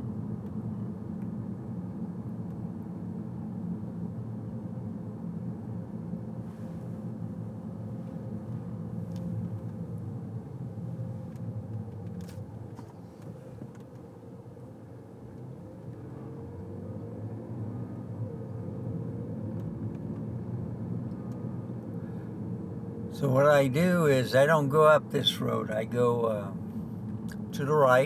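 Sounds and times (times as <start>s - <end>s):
car engine and road rumble: 0.0s - 28.0s.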